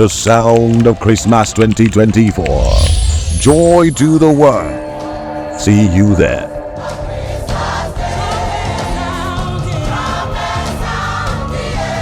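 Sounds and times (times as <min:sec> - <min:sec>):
choir singing with accompaniment: 0:02.7 - 0:12.0.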